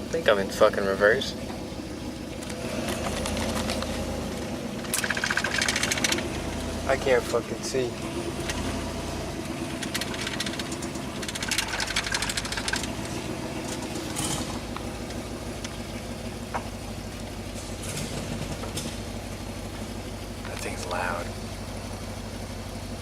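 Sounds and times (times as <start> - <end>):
engine running loud and rough: 0.0 - 23.0
rapid clattering tick: 9.8 - 13.8.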